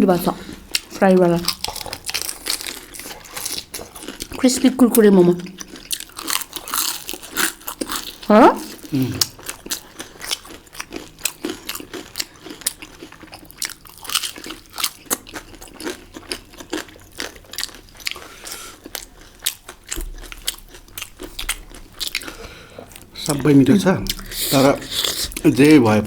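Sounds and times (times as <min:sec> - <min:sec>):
crunching and chewing food: 0:00.3 - 0:26.0.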